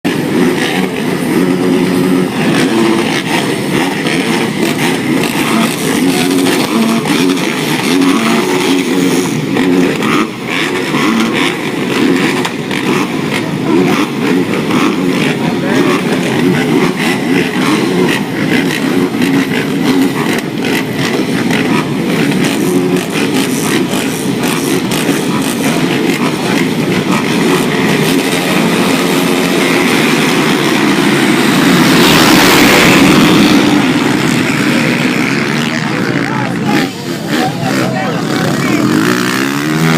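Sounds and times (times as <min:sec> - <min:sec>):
motorcycle engines revving: 0:00.0 - 0:39.9.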